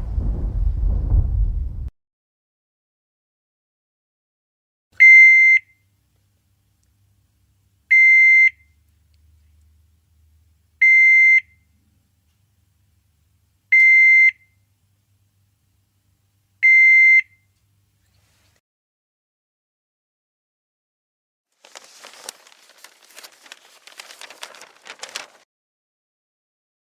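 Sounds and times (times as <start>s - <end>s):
faint low hum: 0.0s - 1.9s, 5.8s - 13.8s, 21.7s - 25.4s
hospital machine warning beep: 5.0s - 5.6s, 7.9s - 8.7s, 10.8s - 11.6s, 13.7s - 14.5s, 16.6s - 17.5s.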